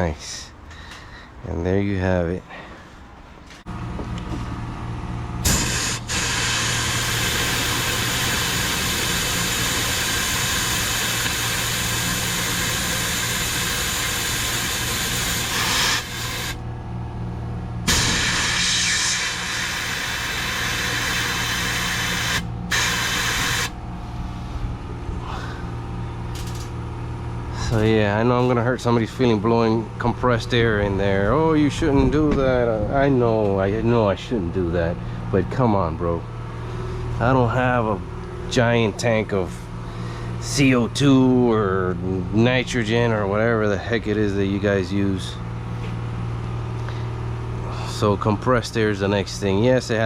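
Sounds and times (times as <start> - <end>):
steady low hum: 0.0 - 50.0
compressed air blow gun hissing: 5.4 - 16.6, 17.9 - 24.6.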